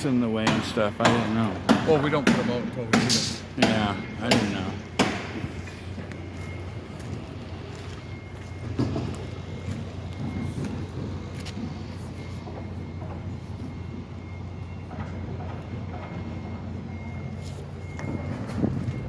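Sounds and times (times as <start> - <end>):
heavy vehicle engines rumbling: 0.0 - 19.0
sharp knocks: 0.4 - 5.6.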